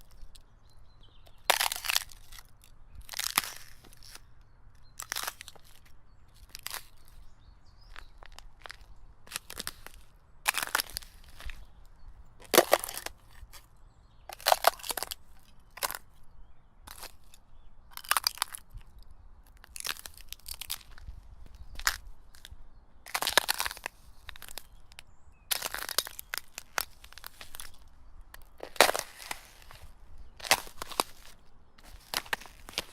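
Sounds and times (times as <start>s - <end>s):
footsteps cracking ice: 1.3s - 4.2s, 4.9s - 13.7s, 14.3s - 16.2s, 16.9s - 32.9s.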